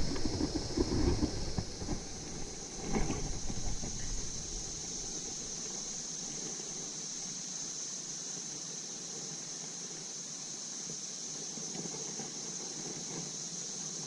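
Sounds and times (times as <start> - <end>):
wind buffeting microphone: 0.0 - 5.3
steady high-pitched hiss: 0.0 - 14.0.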